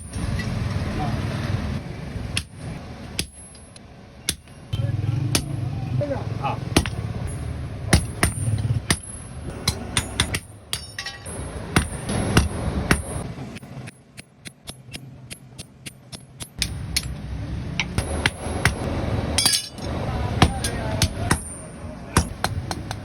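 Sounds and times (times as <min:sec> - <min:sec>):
hammer striking iron: 0:02.3 - 0:04.6, 0:05.3 - 0:05.6, 0:06.7 - 0:17.2, 0:17.8 - 0:21.6, 0:22.2 - 0:23.0.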